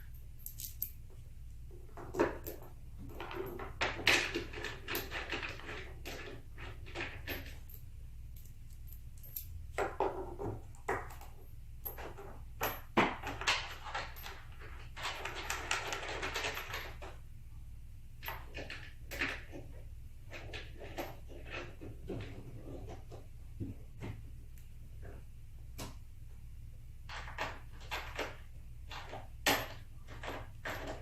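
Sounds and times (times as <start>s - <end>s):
metal bolts and washers clinking: 0.0s - 1.2s, 1.9s - 17.2s, 27.1s - 31.0s.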